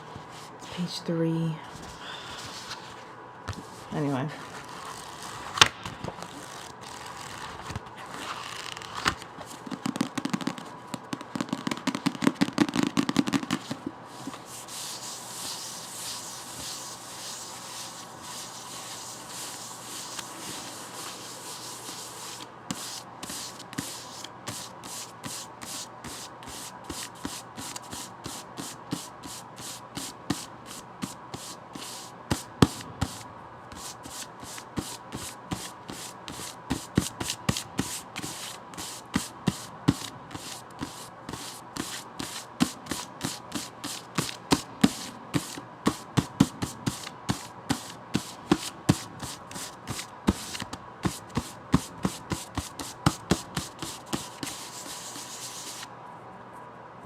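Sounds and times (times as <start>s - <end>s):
fingers tapping on a book: 9.6s - 13.9s.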